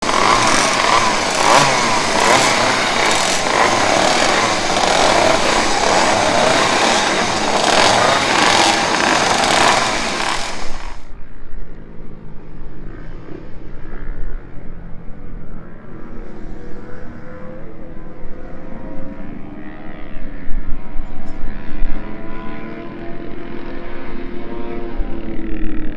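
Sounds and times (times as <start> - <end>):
motorcycle engine at high revs: 0.0 - 11.1.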